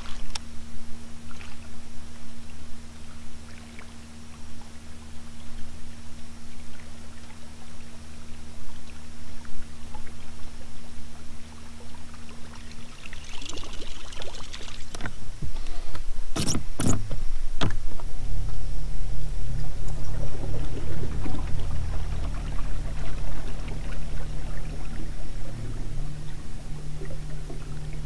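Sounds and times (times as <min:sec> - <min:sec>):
water sloshing and splashing: 0:00.0 - 0:00.4, 0:01.2 - 0:01.9, 0:11.6 - 0:28.0
boat motor humming: 0:00.0 - 0:28.0.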